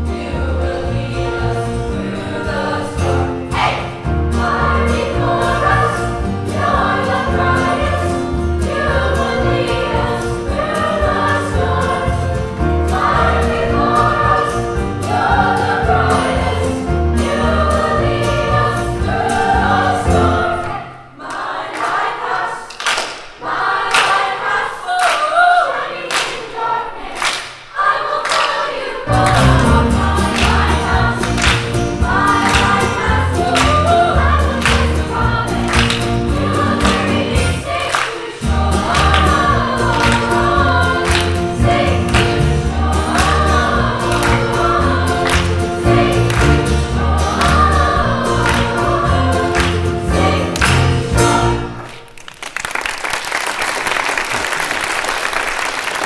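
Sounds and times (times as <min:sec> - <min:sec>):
children's choir singing: 0:00.0 - 0:52.2
audience applause: 0:28.2 - 0:38.3, 0:38.9 - 0:45.6, 0:47.4 - 0:49.8, 0:51.7 - 0:56.0
accompaniment with heavy bass: 0:29.1 - 0:37.8, 0:38.4 - 0:51.8.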